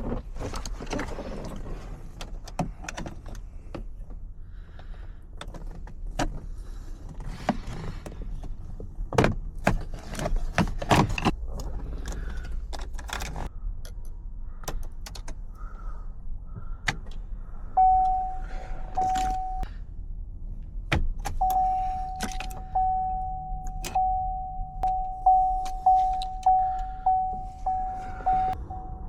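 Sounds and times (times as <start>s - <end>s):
car warning chime dinging: 17.8s - 19.7s, 21.3s - 29.0s.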